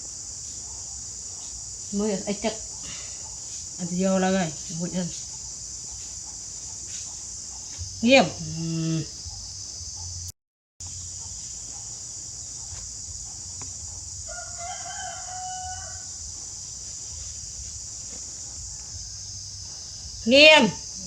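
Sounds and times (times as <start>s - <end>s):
rooster crowing: 14.2s - 16.4s, 18.4s - 20.0s.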